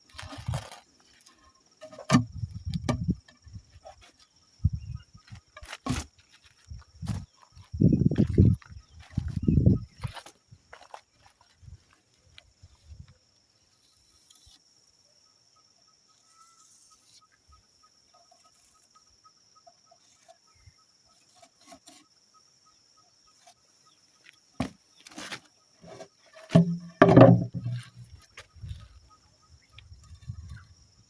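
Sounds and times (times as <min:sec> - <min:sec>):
wooden knocks: 0:01.8 - 0:03.4, 0:25.8 - 0:28.2
scrape: 0:16.2 - 0:17.3, 0:21.2 - 0:22.1, 0:25.1 - 0:26.6
light knocks: 0:26.5 - 0:28.0.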